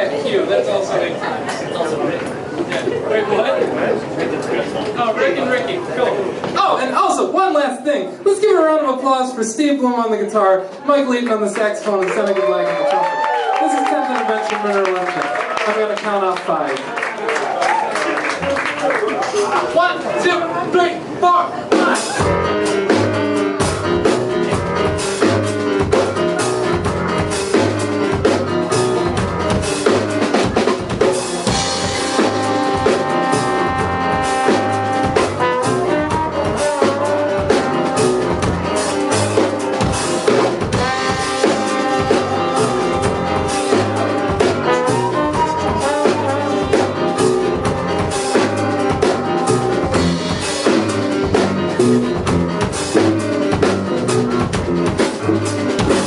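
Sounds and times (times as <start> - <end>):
big band playing: 0.0 - 56.0
drum kit busy beat: 21.2 - 56.0
horns holding chords: 22.2 - 56.0.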